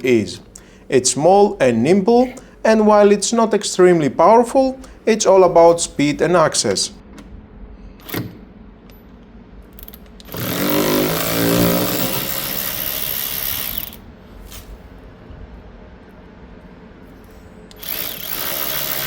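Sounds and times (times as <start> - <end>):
ratchet click: 9.8 - 14.0, 17.7 - 19.0
cordless ratchet motor running: 10.2 - 14.0, 17.7 - 19.0.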